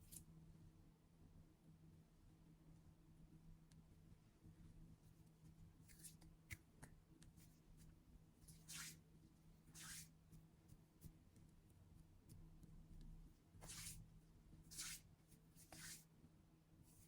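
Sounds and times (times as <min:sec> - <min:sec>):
soft rustling swishes: 0:13.6 - 0:14.0, 0:14.7 - 0:15.0, 0:15.6 - 0:16.0.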